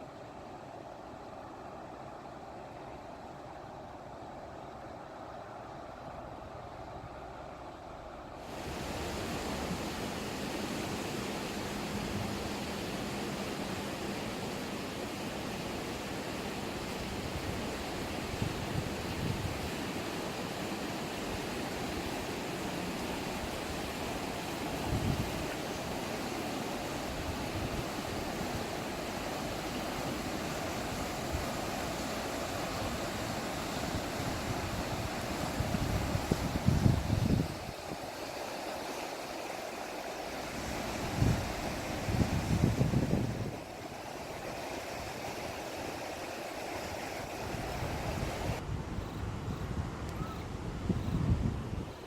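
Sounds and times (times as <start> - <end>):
river water rushing: 0.0 - 48.6
wind buffeting microphone: 34.0 - 38.1, 41.0 - 43.7, 47.5 - 52.0.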